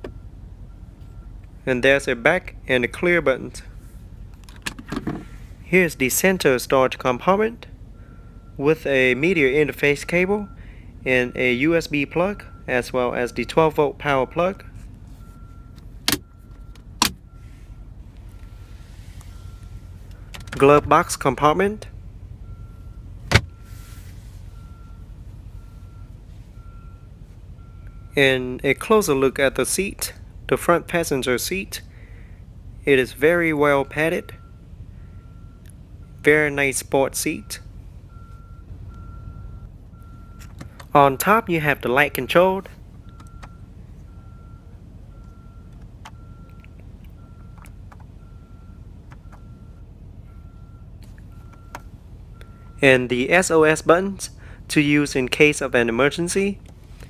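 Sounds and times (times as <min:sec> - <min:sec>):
car warning chime beeping: 0:00.0 - 0:04.2, 0:05.7 - 0:57.0
low cabin rumble: 0:00.0 - 0:57.0
glove box latch click: 0:04.3 - 0:05.3, 0:15.8 - 0:17.2, 0:40.4 - 0:40.9.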